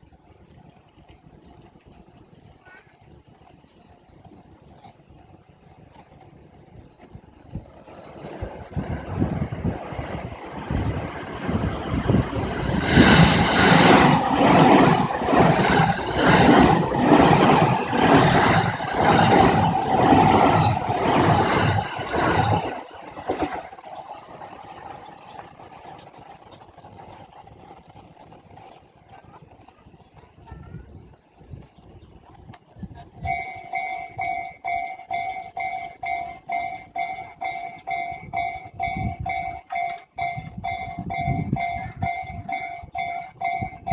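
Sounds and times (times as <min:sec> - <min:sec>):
train wheels clattering over rail joints: 0:05.9 - 0:43.9
level crossing warning bell: 0:11.6 - 0:12.5, 0:33.2 - 0:43.9.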